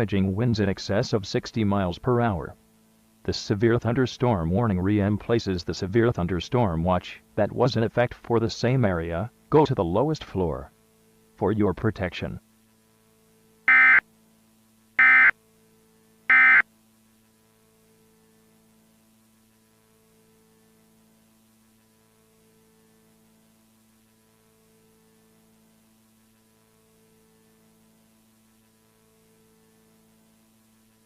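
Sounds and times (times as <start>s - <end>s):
faint steady hum: 0.0s - 31.0s
short data tones: 13.7s - 14.0s, 15.0s - 15.4s, 16.3s - 16.6s.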